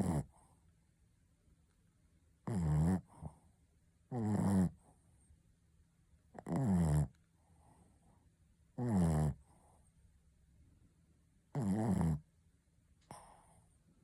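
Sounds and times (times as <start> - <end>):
dog snoring: 0.0 - 0.6, 2.4 - 5.0, 6.3 - 9.9, 11.5 - 12.3, 13.0 - 13.7
faint breathing: 13.0 - 14.0.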